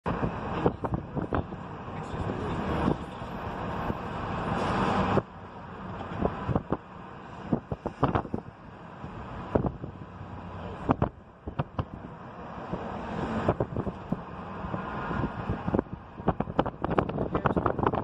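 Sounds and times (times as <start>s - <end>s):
vehicle noise: 0.0s - 18.0s
wind buffeting microphone: 6.0s - 18.0s.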